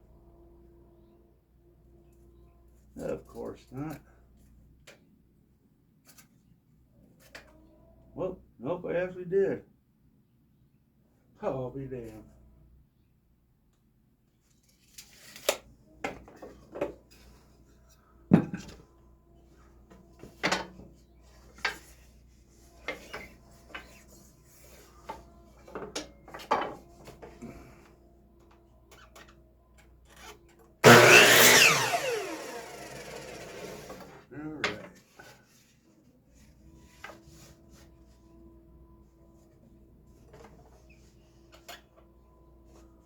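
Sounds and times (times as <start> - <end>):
power saw winding down: 30.8 - 34.2.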